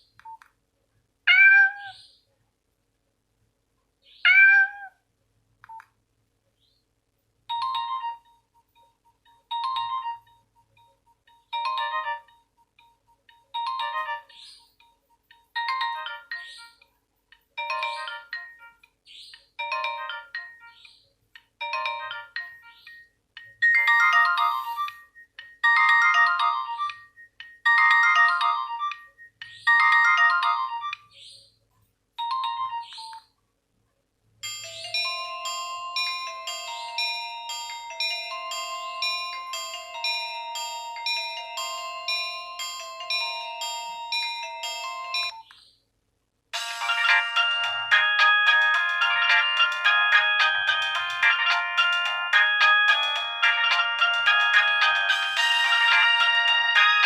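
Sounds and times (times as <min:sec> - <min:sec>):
electronic ringtone melody: 0:07.5 - 0:16.8, 0:17.6 - 0:18.8, 0:19.6 - 0:20.8, 0:21.6 - 0:31.0, 0:32.2 - 0:33.0, 0:34.4 - 0:45.4, 0:46.6 - 0:57.0.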